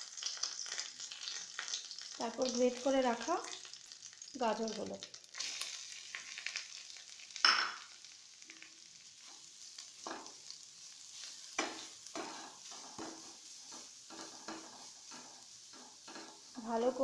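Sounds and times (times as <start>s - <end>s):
carrot sizzling in a pan: 0.0s - 17.0s
spoon scraping a pan: 9.2s - 17.0s.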